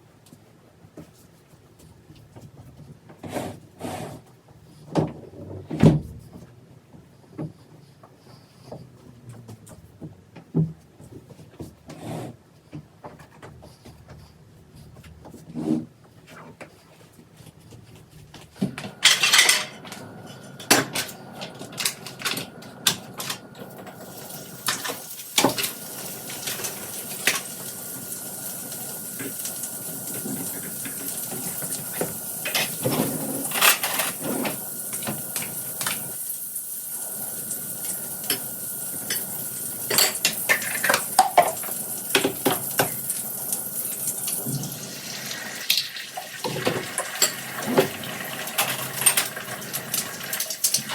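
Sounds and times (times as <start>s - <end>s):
steady hiss: 18.6s - 46.3s
dishes and cutlery clattering: 18.8s - 23.4s, 32.5s - 34.6s, 39.9s - 41.6s, 46.5s - 48.0s.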